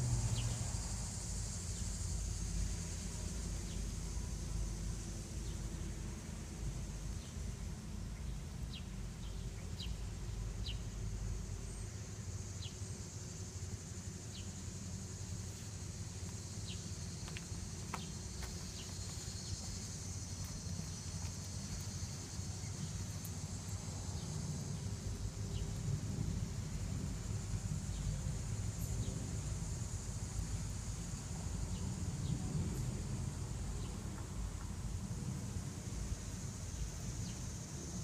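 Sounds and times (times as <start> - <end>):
insects droning: 0.0 - 38.0
low steady rumble: 0.0 - 38.0.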